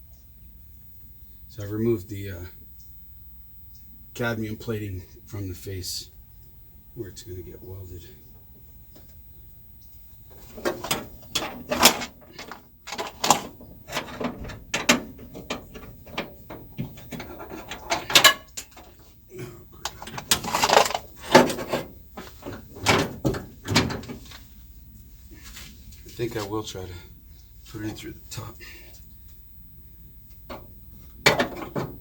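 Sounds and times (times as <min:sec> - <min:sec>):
metal clinks knocks and scrapes: 0:10.3 - 0:19.0, 0:19.8 - 0:24.2.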